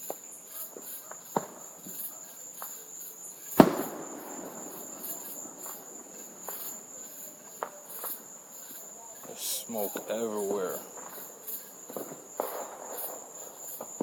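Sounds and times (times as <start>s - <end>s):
crickets chirping: 0.0s - 14.0s
distant firework pops: 0.0s - 14.0s
loud firework bang: 3.6s - 7.0s, 11.9s - 14.0s.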